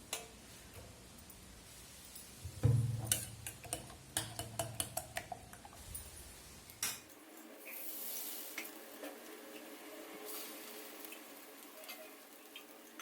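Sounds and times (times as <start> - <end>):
frying hiss: 0.0 - 13.0
utensil clinking against bowl: 3.0 - 5.7.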